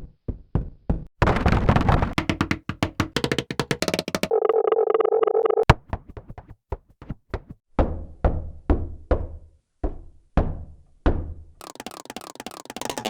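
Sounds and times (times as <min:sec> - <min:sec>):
echoing hand knocks: 0:02.2 - 0:04.3.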